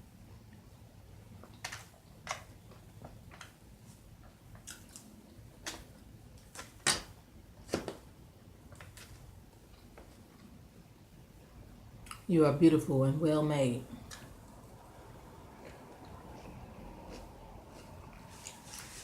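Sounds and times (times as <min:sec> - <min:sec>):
person chewing crunchy salad: 0:04.6 - 0:05.4, 0:15.3 - 0:19.0.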